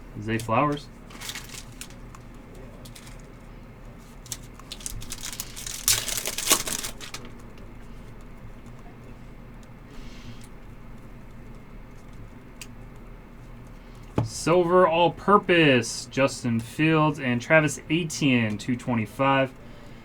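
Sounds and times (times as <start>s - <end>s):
plastic wrapper crinkling: 0.4s - 3.4s, 4.0s - 7.5s
wrapper tearing: 1.1s - 2.0s, 2.8s - 3.3s, 4.2s - 7.4s.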